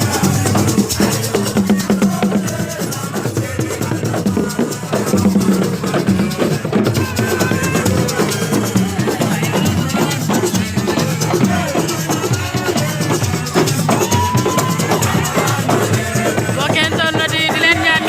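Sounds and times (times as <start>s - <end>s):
fast drum rhythm: 0.0s - 18.0s
voices over drums: 0.0s - 18.0s.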